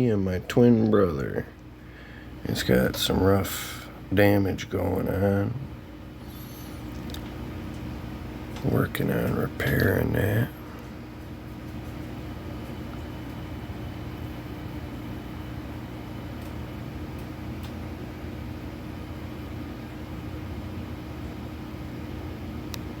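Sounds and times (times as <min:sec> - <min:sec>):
low mechanical hum: 0:00.0 - 0:23.0.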